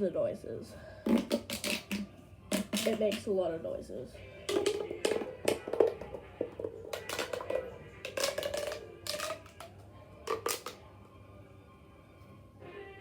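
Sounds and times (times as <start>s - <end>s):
plastic pop tube crackling: 1.0s - 3.4s, 4.5s - 10.8s.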